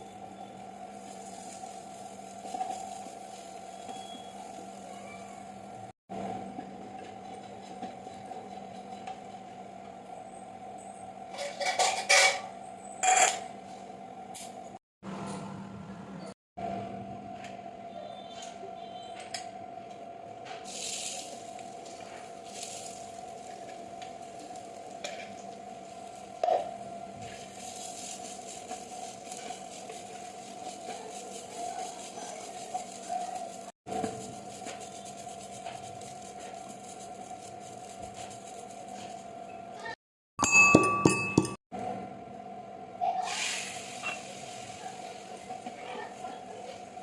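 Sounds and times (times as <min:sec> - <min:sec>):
food sizzling in a pan: 0:00.0 - 0:06.0, 0:27.2 - 0:38.8, 0:43.1 - 0:47.0.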